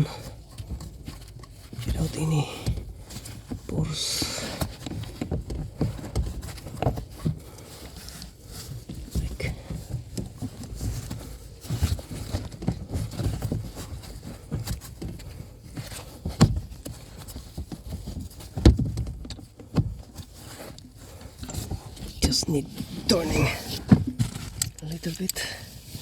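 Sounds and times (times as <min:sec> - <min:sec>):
metal parts clunking and scraping: 0:21.3 - 0:25.6.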